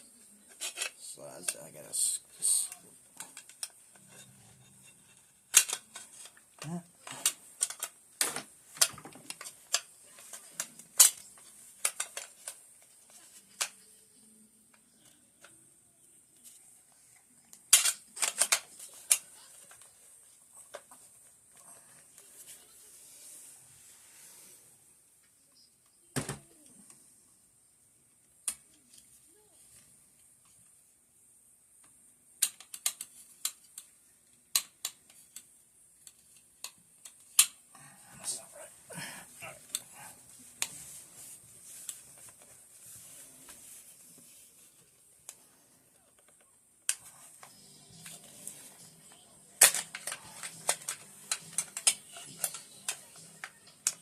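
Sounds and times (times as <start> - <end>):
faint steady hiss: 0.0 - 54.0
metal rifle parts clicking: 5.5 - 6.4, 17.7 - 19.9, 49.6 - 54.0.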